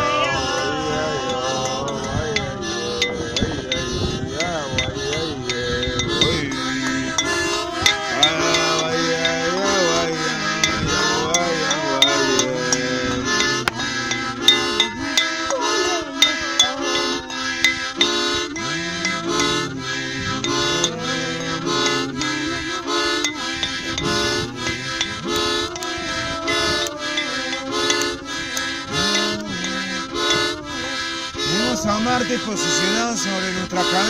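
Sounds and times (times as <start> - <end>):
harmonica chords: 0.0 - 34.0.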